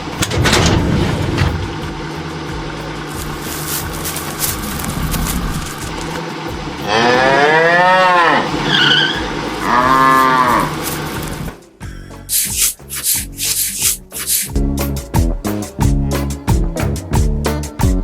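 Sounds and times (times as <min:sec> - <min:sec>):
steady rumbling background: 0:00.0 - 0:07.3
music with plucked beat: 0:00.0 - 0:18.0
cow mooing: 0:06.8 - 0:10.9.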